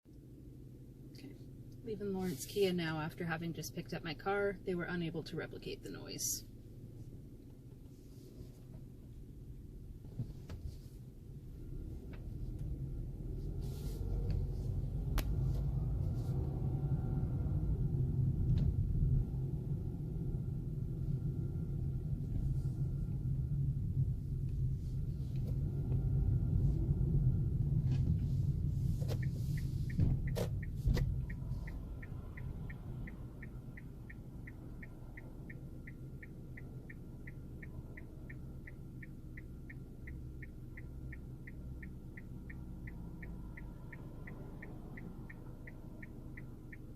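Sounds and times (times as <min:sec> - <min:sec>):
car road and engine rumble: 0:00.1 - 0:46.9.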